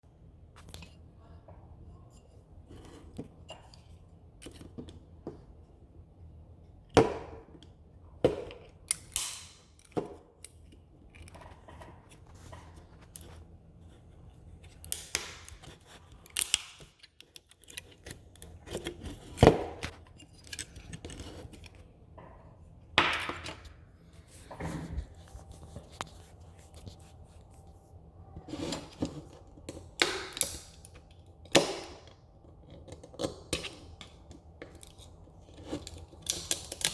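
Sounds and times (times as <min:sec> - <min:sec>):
plastic snapping and cracking: 0:08.8 - 0:10.6, 0:14.8 - 0:21.5.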